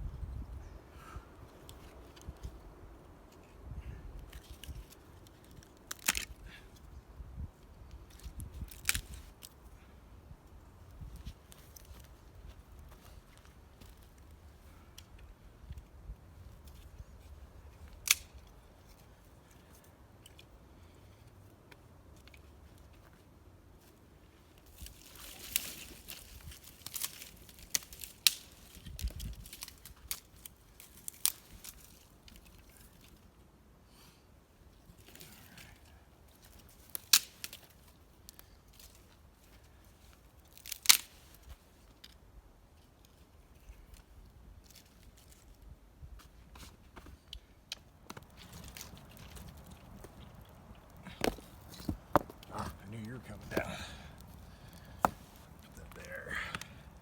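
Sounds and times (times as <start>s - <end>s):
dry plant material crackling: 24.6s - 33.2s, 35.0s - 42.1s, 48.2s - 57.0s.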